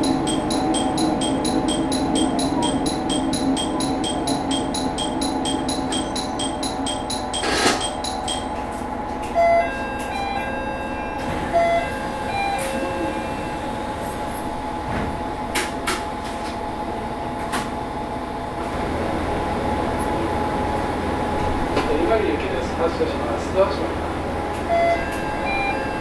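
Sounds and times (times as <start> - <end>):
railcar interior hum: 0.0 - 26.0.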